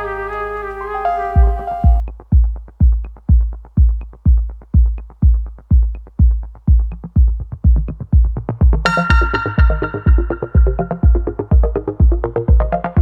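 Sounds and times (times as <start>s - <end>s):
heavy kick drum: 1.4s - 13.0s
synth line: 8.9s - 11.8s.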